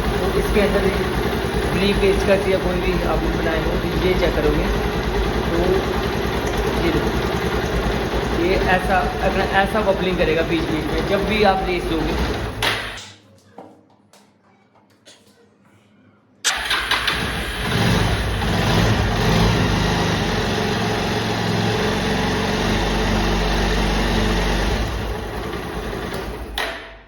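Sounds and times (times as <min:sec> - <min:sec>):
motorcycle engine running: 0:00.0 - 0:12.6, 0:16.5 - 0:26.6.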